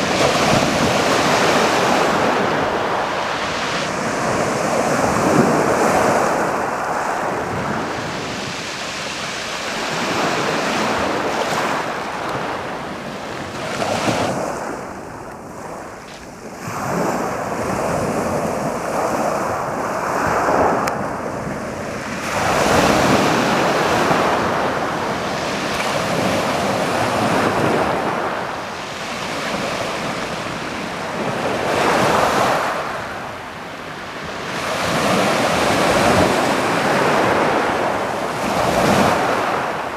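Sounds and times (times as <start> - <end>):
waves washing over pebble beach: 16.6 - 33.6, 34.2 - 39.9.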